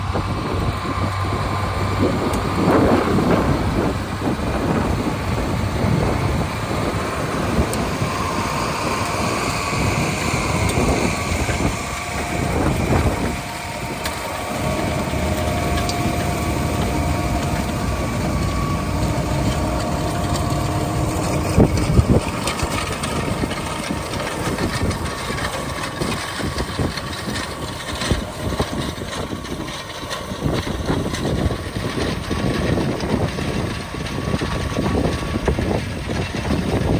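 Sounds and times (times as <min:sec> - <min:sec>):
harvest machinery engines running: 0:00.0 - 0:36.9
whine shifting in pitch: 0:00.0 - 0:36.9.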